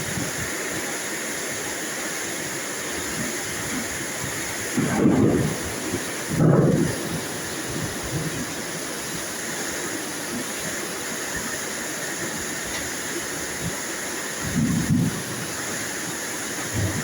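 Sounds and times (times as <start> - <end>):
steady rain hiss: 0.0 - 17.0
thunder rumble: 4.2 - 8.6, 14.4 - 15.4, 16.7 - 17.0.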